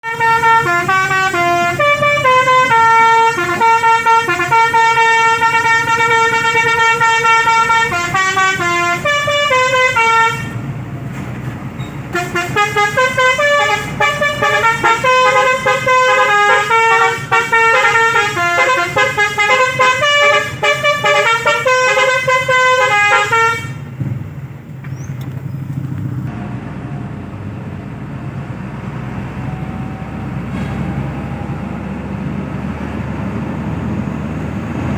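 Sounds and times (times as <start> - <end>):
musical vehicle horn tune: 0.0 - 10.7, 12.1 - 24.0
low engine and traffic rumble: 0.0 - 34.9.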